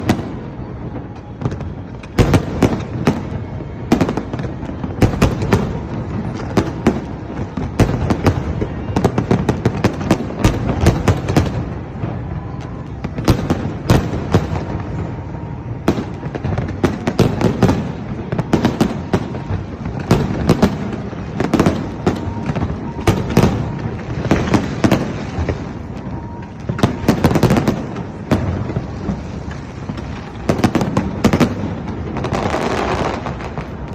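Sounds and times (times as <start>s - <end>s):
fireworks bangs and crackles: 0.0s - 33.9s.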